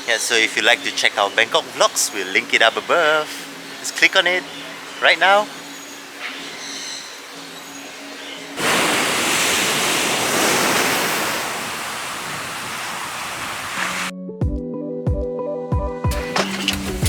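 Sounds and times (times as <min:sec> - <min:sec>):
rushing water: 0:00.0 - 0:14.1.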